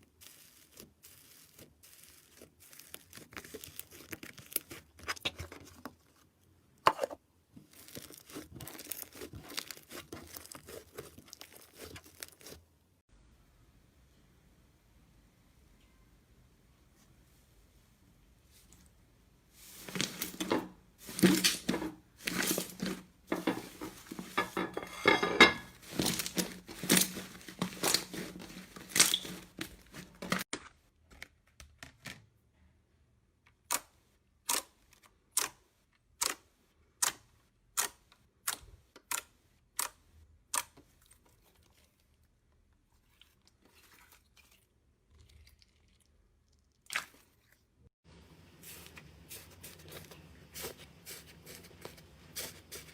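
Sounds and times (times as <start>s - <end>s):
slime crackling and tearing: 0.1s - 5.2s, 7.7s - 12.6s, 25.8s - 30.4s.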